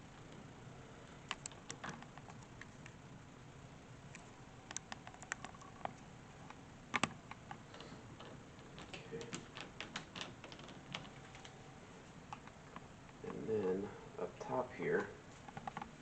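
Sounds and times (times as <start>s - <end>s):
lock parts clicking and tapping: 6.9s - 11.5s.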